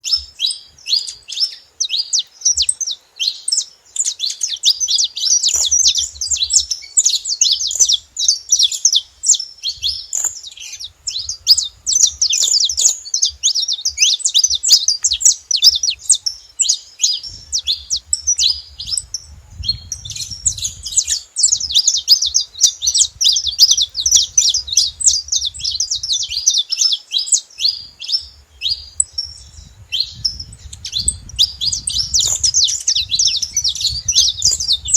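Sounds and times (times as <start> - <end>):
finch singing high chirps and trills: 0.0 - 34.9.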